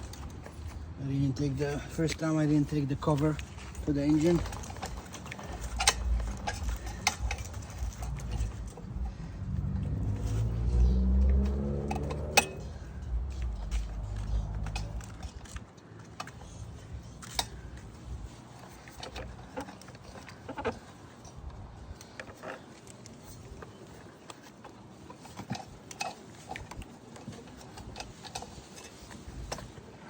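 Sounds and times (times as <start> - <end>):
mower parts clicking and clinking: 1.5 - 9.2, 9.8 - 29.9.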